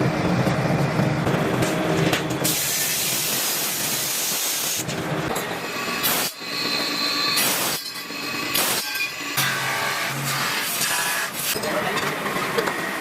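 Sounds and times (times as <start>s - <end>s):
factory machinery running: 0.0s - 13.0s
hiss of air or spray: 2.4s - 4.8s.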